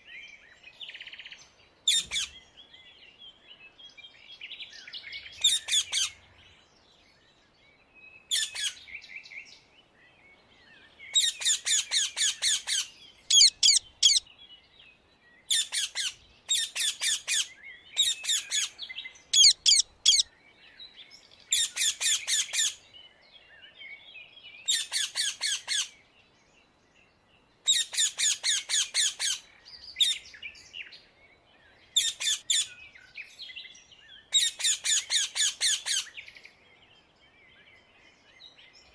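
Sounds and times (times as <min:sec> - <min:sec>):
parakeet squawking: 0:12.5 - 0:14.2, 0:19.4 - 0:20.3.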